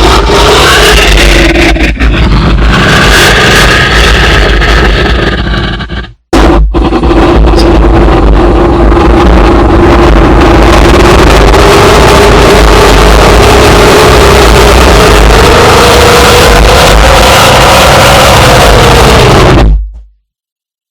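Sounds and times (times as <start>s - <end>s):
loud distorted motor drone: 0.0s - 19.9s.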